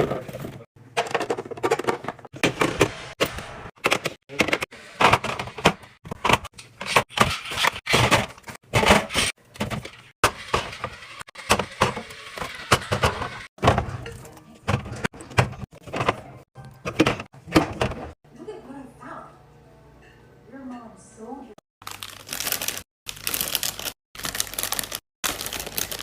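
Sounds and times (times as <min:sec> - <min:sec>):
packages clacking and crinkling: 0:21.8 - 0:26.0.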